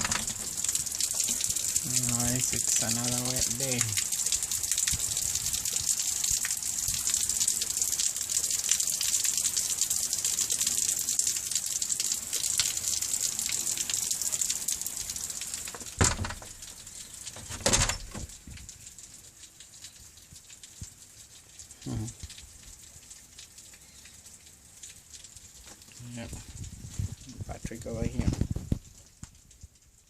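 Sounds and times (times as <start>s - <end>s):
loud thumps: 0.0s - 0.5s, 15.9s - 16.6s, 17.4s - 18.3s
heavy rain pouring: 0.0s - 30.0s.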